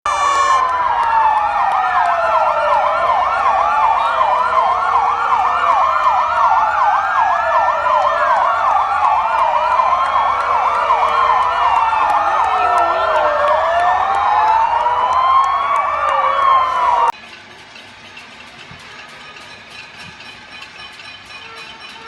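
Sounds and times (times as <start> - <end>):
sirens wailing: 0.0 - 17.2
siren yelping tone: 0.1 - 17.1.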